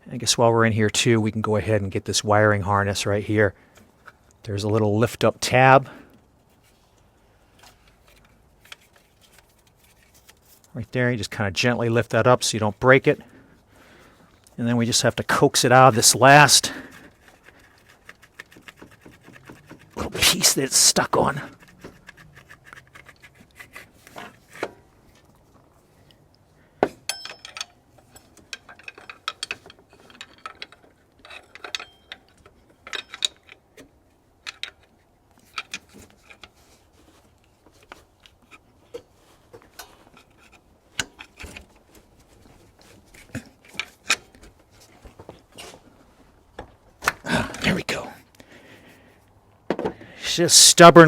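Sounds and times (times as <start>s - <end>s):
metal clinks and knocks: 26.8s - 33.7s.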